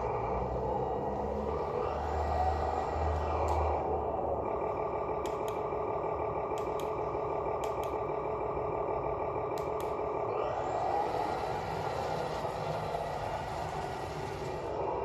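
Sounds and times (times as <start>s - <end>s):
electronic truck engine sound: 0.0s - 15.0s
sharp clicks: 5.2s - 5.7s, 6.5s - 7.0s, 7.6s - 8.0s, 9.5s - 10.0s.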